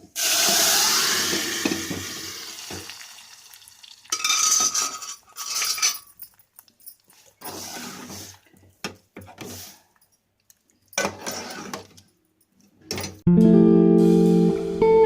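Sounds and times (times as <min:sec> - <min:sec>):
spoon scraping in a pot: 0:04.2 - 0:06.0
guitar music: 0:13.3 - 0:15.0.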